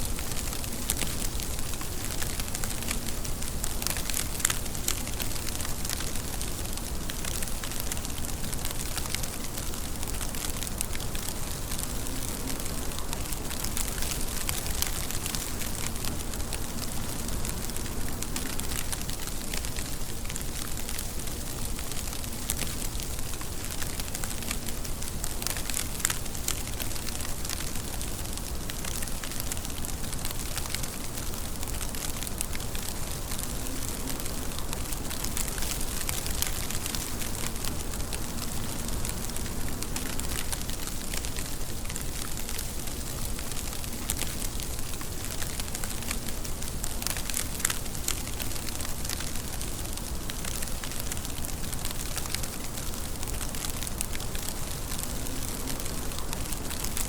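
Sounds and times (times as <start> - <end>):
raindrops pattering on surface: 0.0 - 57.0
steady rain falling: 0.0 - 57.0.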